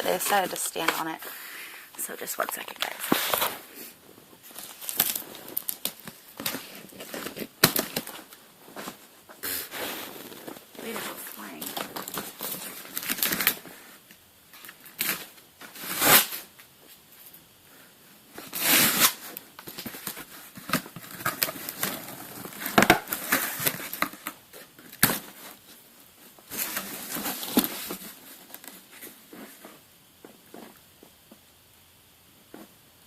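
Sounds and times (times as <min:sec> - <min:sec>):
cardboard tearing and crumpling: 0:04.4 - 0:13.8, 0:14.5 - 0:16.5, 0:18.3 - 0:25.7, 0:26.5 - 0:29.2.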